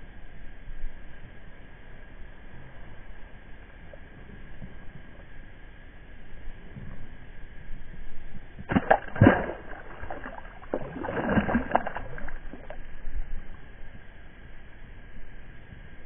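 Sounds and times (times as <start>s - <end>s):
water splashing: 8.6s - 13.4s.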